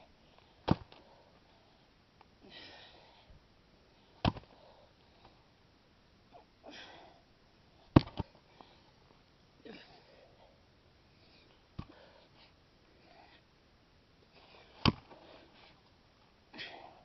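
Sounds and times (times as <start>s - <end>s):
person breathing hard: 0.2s - 3.4s, 11.2s - 13.5s.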